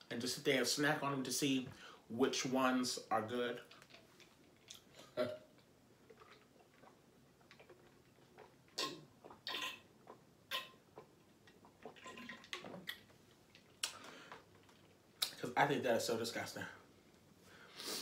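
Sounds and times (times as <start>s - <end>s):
person chewing and lip smacking: 3.7s - 15.4s.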